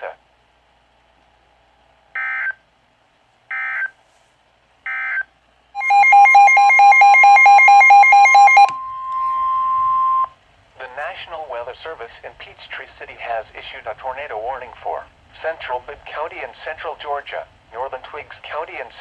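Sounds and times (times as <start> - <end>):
steady tone: 5.8 - 10.3.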